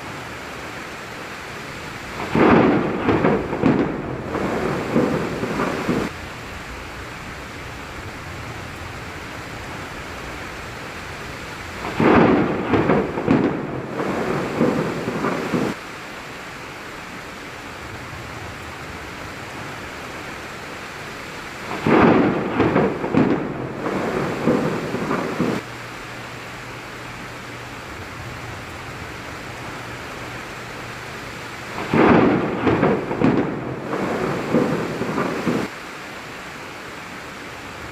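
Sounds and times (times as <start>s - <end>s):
steady rain: 0.0s - 37.9s
thunder cracks and rumbles: 2.1s - 6.2s, 8.0s - 15.8s, 21.7s - 25.7s, 31.7s - 35.7s.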